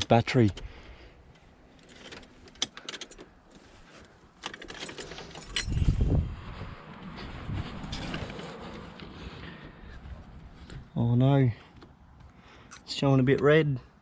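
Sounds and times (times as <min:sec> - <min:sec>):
car keys jangling: 0:04.4 - 0:06.1.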